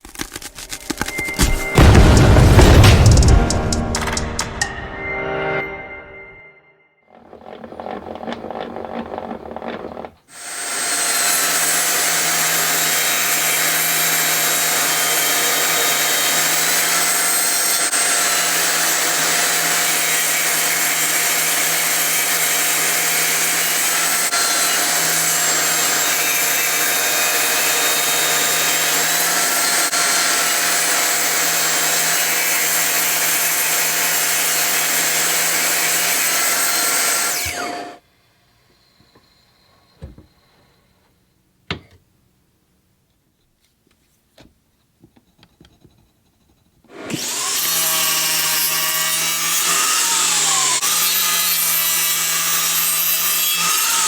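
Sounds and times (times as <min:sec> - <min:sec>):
electric table saw running: 0:10.3 - 0:38.0, 0:46.9 - 0:54.0.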